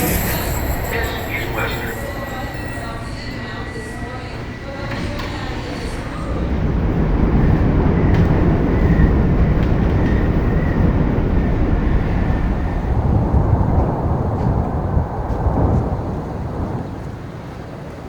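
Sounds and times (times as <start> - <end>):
faint high whine: 0.0 - 6.7
train rumbling: 0.0 - 18.0.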